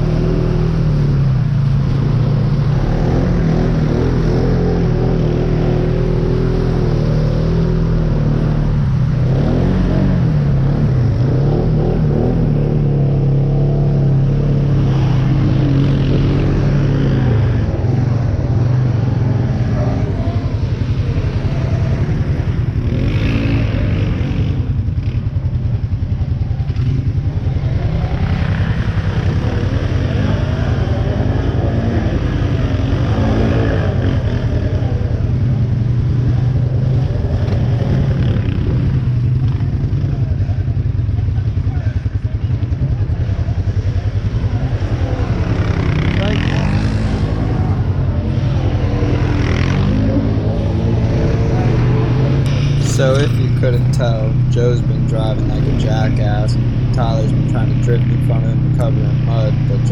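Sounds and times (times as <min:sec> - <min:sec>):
atv engine revving: 0:00.0 - 0:59.9.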